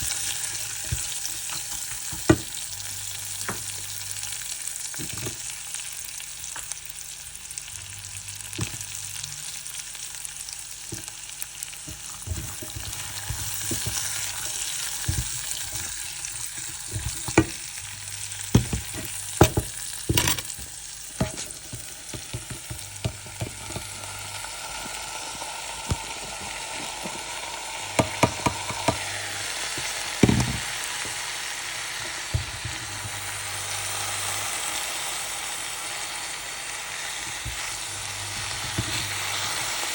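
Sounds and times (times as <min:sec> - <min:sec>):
food sizzling in oil: 0:00.0 - 0:39.9
spatula scraping pan: 0:11.9 - 0:24.0, 0:37.2 - 0:39.9.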